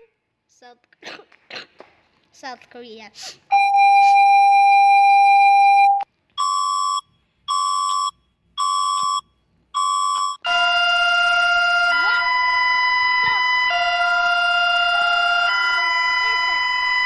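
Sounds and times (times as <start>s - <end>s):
short high-pitched beeps: 3.5s - 9.2s
long electronic tone: 10.5s - 17.0s.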